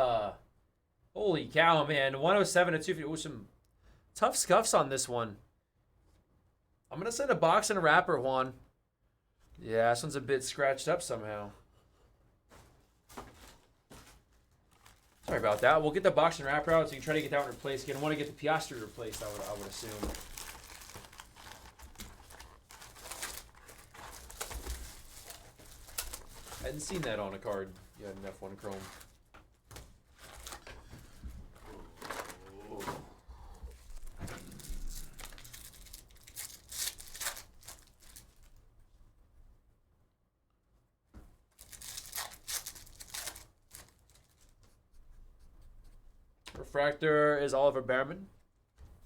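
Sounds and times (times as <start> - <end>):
foil wrappers crinkling: 13.4 - 31.2, 33.9 - 38.6, 41.5 - 44.6.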